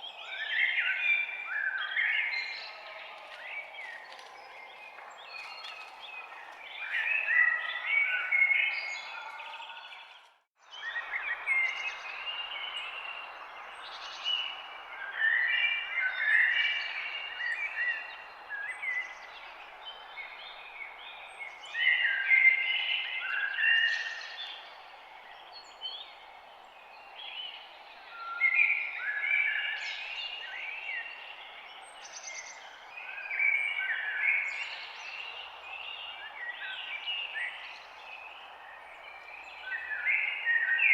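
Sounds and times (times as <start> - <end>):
songbirds chirping and singing: 0.0 - 40.9.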